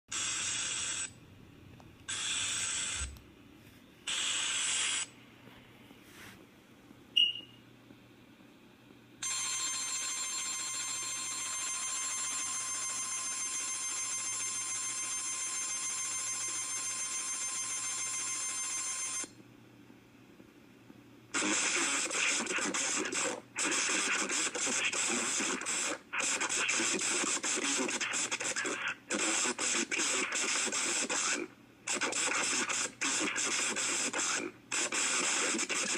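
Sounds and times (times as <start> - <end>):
screechy data bursts: 0.1 - 1.1, 2.1 - 3.2, 4.1 - 5.1, 21.4 - 35.9
harsh choppy static-like sound: 0.1 - 7.1, 7.7 - 35.9
steady attention tone: 7.2 - 7.6.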